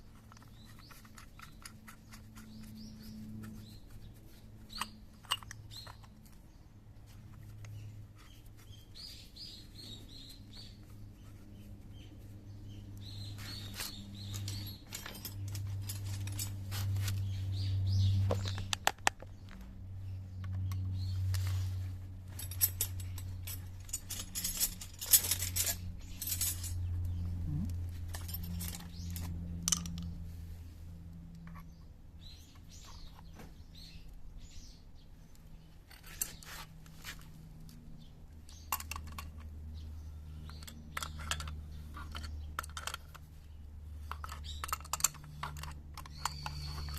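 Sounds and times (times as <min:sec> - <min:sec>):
steady low hum: 0:00.0 - 0:46.9
metal tools clinking and scraping: 0:04.6 - 0:06.4, 0:13.0 - 0:17.6, 0:20.5 - 0:27.1, 0:27.9 - 0:30.1, 0:35.8 - 0:37.3, 0:38.5 - 0:39.5, 0:40.4 - 0:43.3, 0:44.0 - 0:46.9.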